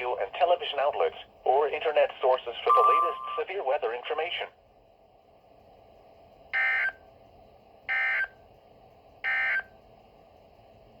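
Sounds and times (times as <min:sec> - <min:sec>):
digital data tone bursts: 0:02.7 - 0:03.5.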